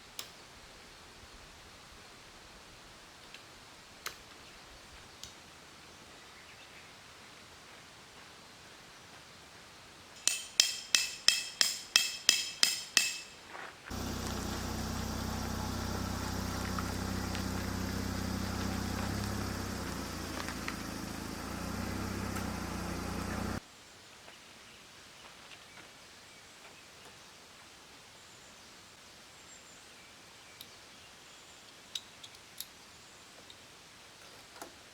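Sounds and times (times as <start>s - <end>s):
metallic hammer blows ringing: 10.2s - 13.4s
low machine hum: 13.9s - 23.6s.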